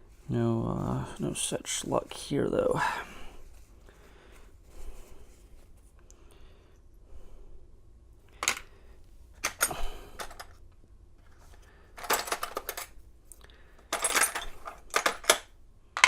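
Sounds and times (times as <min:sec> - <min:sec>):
padlock parts clinking and rattling: 0:09.4 - 0:10.6, 0:11.3 - 0:13.0, 0:13.8 - 0:16.0.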